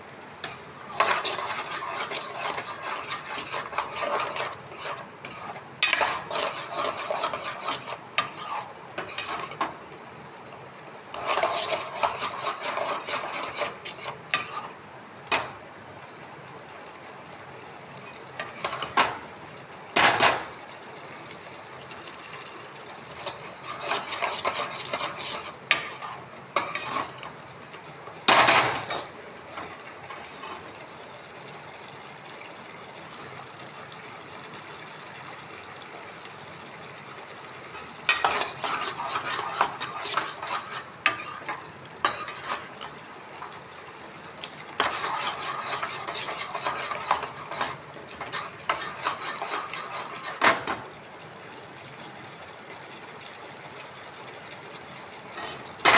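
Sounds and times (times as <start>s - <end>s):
spoon stirring and scraping pan: 0.4s - 9.8s, 11.1s - 15.6s, 18.4s - 19.3s, 23.1s - 27.4s, 28.2s - 30.9s, 37.6s - 43.6s, 44.4s - 50.9s, 55.2s - 55.9s.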